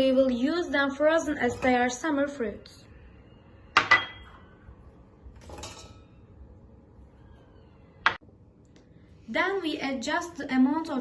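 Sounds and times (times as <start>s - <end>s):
kitchenware clinking: 3.8s - 4.6s, 5.4s - 6.3s.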